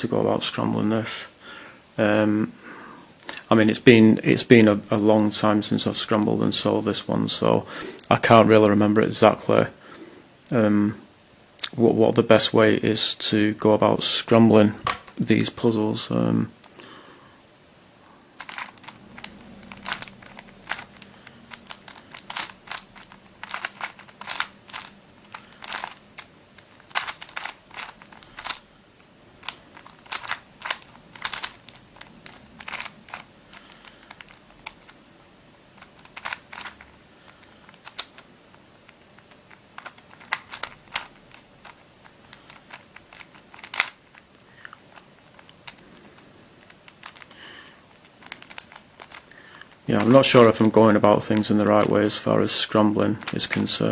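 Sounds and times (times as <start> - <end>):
plastic twisty puzzle clicking: 18.4 - 28.7, 29.4 - 53.9.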